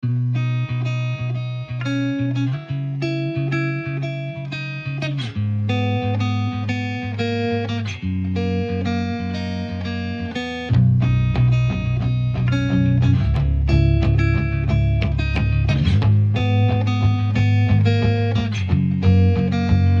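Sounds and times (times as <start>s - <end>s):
guitar playing chords: 0.0s - 20.0s
bass line: 8.0s - 20.0s.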